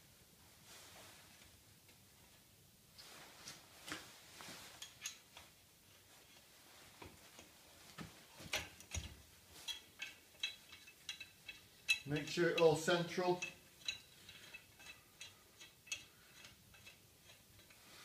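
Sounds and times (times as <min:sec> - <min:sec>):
light metal clicks and taps: 0:04.8 - 0:05.5, 0:08.5 - 0:12.8, 0:13.4 - 0:17.8
ringing metal clinks: 0:09.6 - 0:17.0.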